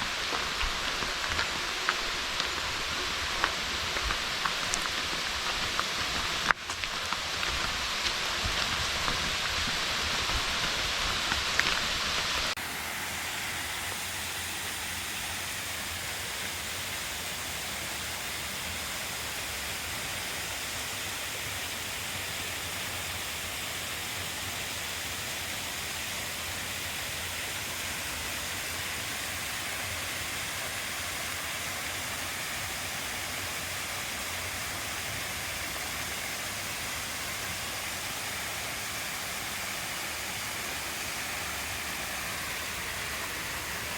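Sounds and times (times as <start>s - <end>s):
waterfall rushing: 0.0s - 16.1s, 27.5s - 43.9s.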